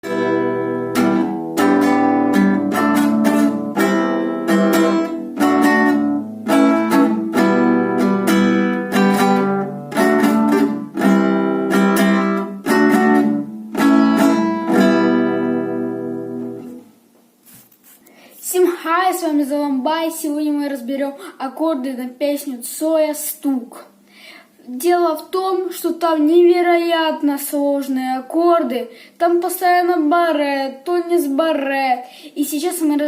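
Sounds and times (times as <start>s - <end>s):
acoustic guitar strumming: 0.0s - 16.9s.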